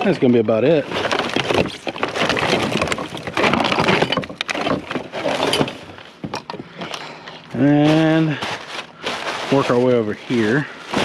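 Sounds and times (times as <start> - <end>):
hard objects knocking and rattling: 0.0 - 7.0.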